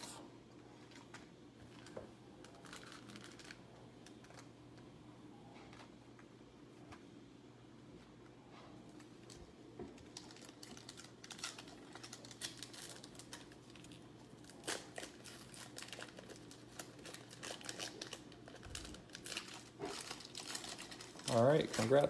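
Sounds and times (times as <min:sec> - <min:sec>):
card pack wrappers crinkling: 0:00.8 - 0:04.5, 0:10.0 - 0:22.0.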